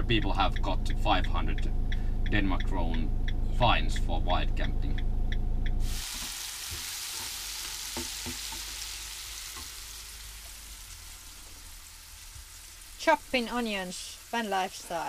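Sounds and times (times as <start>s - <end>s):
low vehicle rumble: 0.0s - 6.0s, 8.1s - 15.0s
food sizzling in a frying pan: 5.8s - 15.0s.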